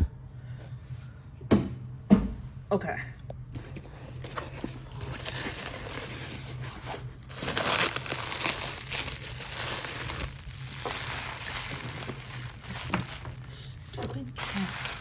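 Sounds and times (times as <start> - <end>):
packaging crinkling: 3.6 - 15.0.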